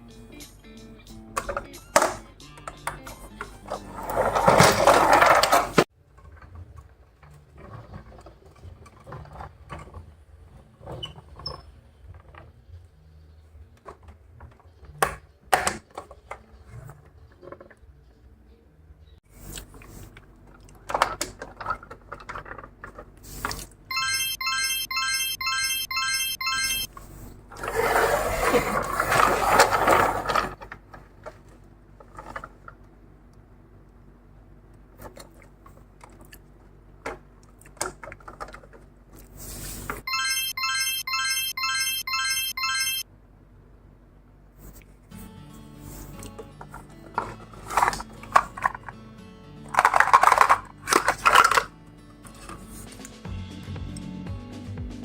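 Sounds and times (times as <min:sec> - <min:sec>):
toy cars and boxes clicking: 0:20.5 - 0:23.2, 0:47.1 - 0:48.9, 0:49.6 - 0:51.7
quick electronic beeps: 0:23.9 - 0:26.9, 0:40.1 - 0:43.0.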